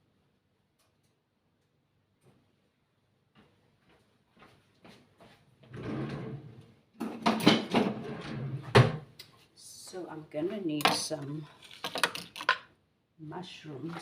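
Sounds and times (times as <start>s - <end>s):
drawer sliding open: 5.7s - 9.0s
kitchen items clattering: 5.8s - 9.0s, 10.5s - 12.7s.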